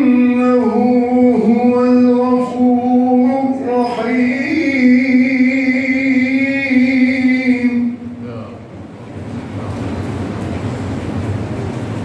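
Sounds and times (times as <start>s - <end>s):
man chanting quran recitation: 0.0s - 8.7s.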